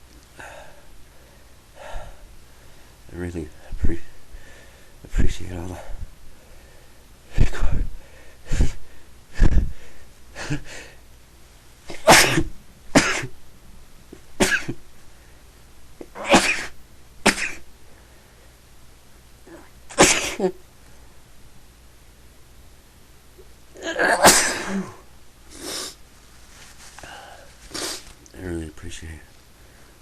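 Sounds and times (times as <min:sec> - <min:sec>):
man sneezing: 0:08.5 - 0:08.8, 0:11.9 - 0:13.3, 0:14.4 - 0:14.8, 0:16.0 - 0:17.6, 0:19.9 - 0:20.6, 0:23.8 - 0:26.0.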